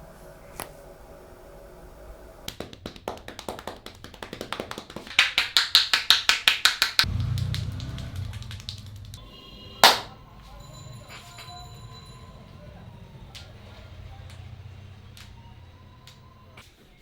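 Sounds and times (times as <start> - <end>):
rapid hand slaps and taps: 2.5 - 9.2, 9.8 - 10.1.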